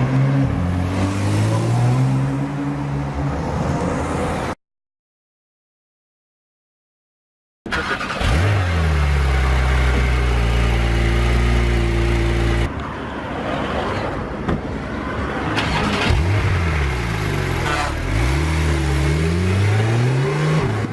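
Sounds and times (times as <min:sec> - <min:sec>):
car engine revving: 0:07.7 - 0:12.7, 0:15.6 - 0:20.9.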